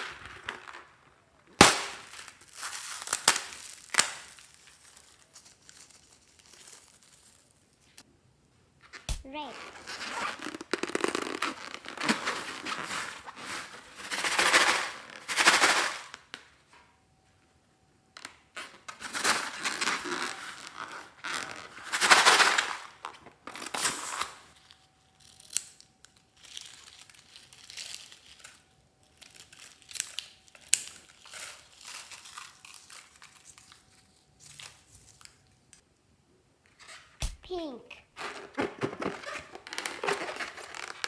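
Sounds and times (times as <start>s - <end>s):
slime and balloon crackling: 0.0s - 8.0s, 8.9s - 15.3s, 18.6s - 23.2s, 37.2s - 41.0s.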